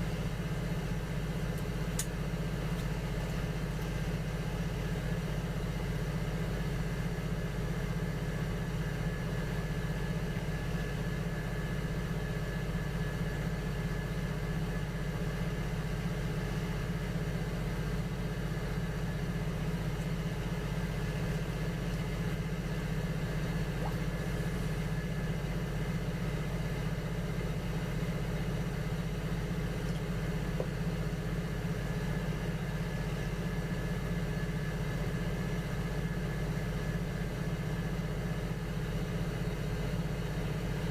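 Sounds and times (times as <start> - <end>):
potter's wheel motor humming: 15.4 - 34.1.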